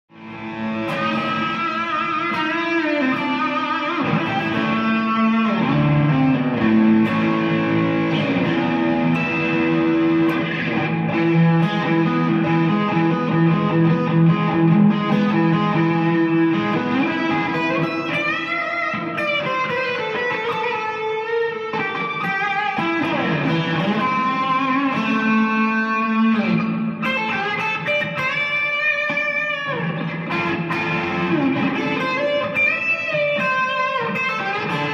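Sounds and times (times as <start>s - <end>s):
electric guitar playing: 0.1s - 34.9s.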